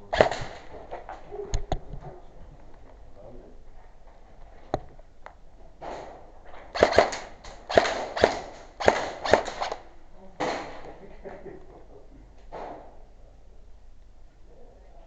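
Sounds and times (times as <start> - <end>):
airsoft gun cracks: 0.1 - 0.7, 6.7 - 9.8.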